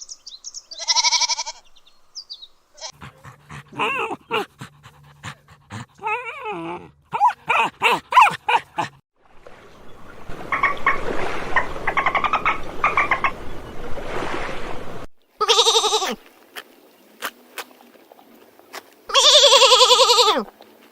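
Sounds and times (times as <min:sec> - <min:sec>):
farm animal bleating: 0:00.7 - 0:01.7, 0:02.8 - 0:03.0, 0:15.4 - 0:16.2, 0:19.1 - 0:20.5.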